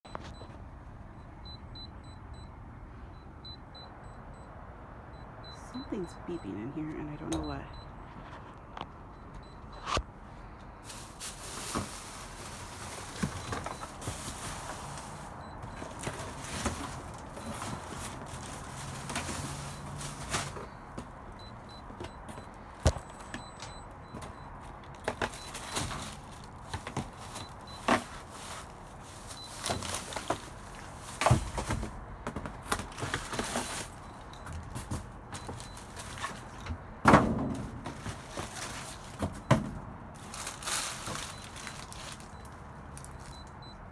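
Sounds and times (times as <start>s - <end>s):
trash bags rustling: 10.8s - 43.6s
items clattering and knocking: 10.8s - 43.7s.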